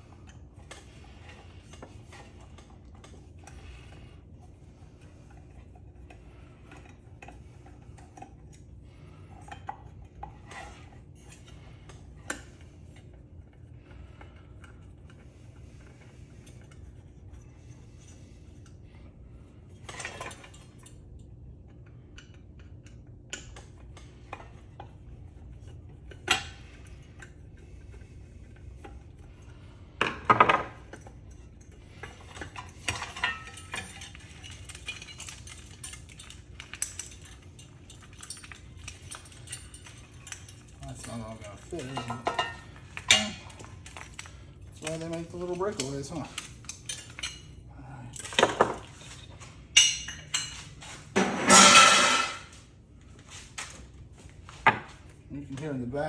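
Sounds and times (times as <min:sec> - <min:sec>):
metal parts and tools clinking: 0:30.2 - 0:52.6.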